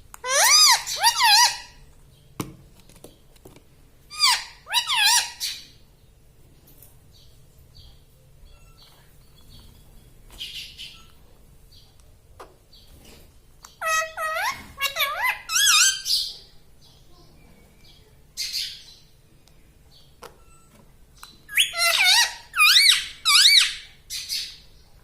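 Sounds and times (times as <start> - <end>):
harsh parakeet squawk: 0.2 - 1.8, 4.1 - 5.6, 21.5 - 24.5
parakeet calling: 0.2 - 1.8, 4.1 - 5.8, 13.7 - 16.4, 21.2 - 24.6.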